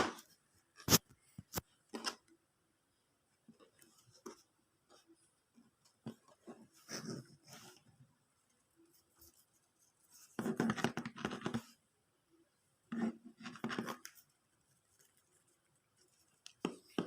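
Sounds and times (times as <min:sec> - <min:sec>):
close scratching and handling noise: 0:03.5 - 0:11.8, 0:12.9 - 0:17.0.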